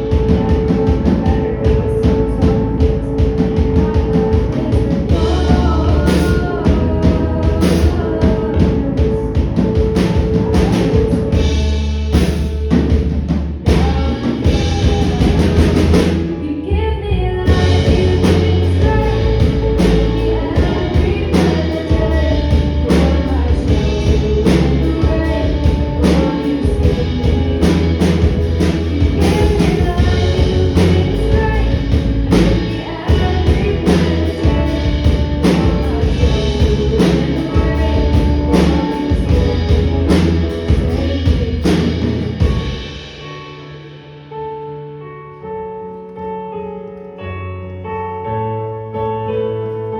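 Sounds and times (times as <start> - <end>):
person singing: 0.0 - 13.0, 13.7 - 44.7
live band playing: 0.0 - 16.5, 17.5 - 44.4.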